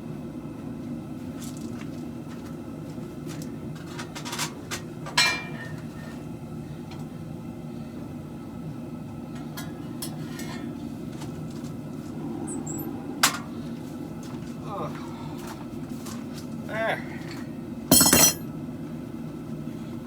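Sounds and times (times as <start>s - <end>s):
low hum: 11.8s - 14.6s
ringing metal clank: 17.9s - 18.5s.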